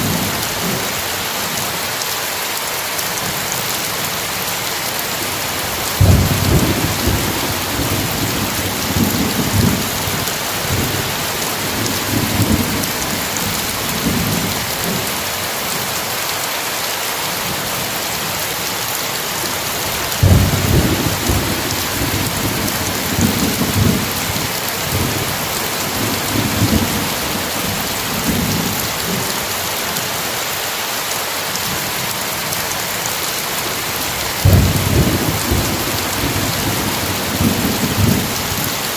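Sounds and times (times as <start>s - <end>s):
heavy rain hissing: 0.0s - 38.9s
thunder rumbling: 5.7s - 15.1s, 20.1s - 29.2s, 34.1s - 38.8s.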